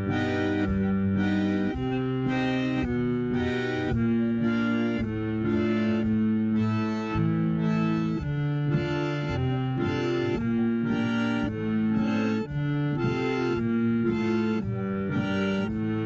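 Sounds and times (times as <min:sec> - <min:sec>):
reedy organ chords: 0:00.0 - 0:16.0.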